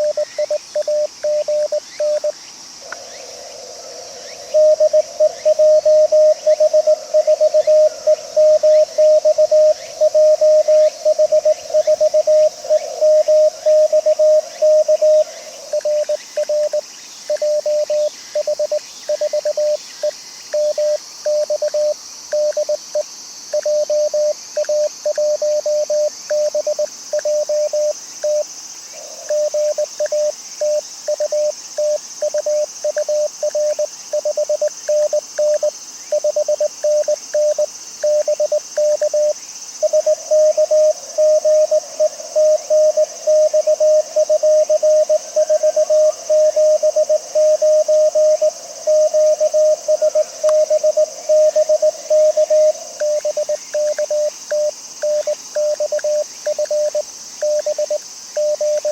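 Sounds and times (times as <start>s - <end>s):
morse code tone: 0.0s - 2.3s, 46.6s - 58.9s.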